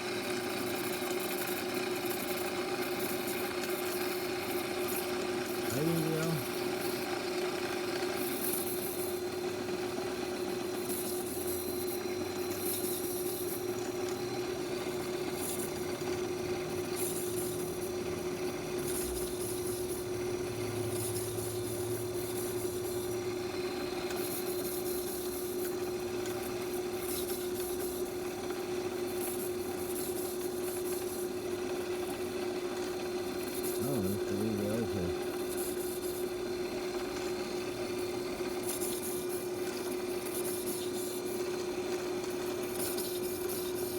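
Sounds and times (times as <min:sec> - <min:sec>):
lathe humming: 0:13.2 - 0:27.0.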